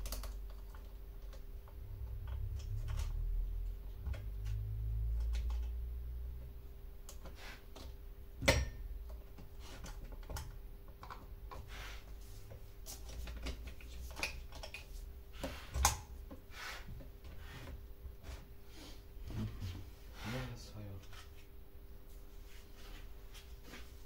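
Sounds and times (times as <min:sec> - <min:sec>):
faint steady hum: 0:00.0 - 0:24.0
clicks and knocks of parts: 0:12.9 - 0:14.9.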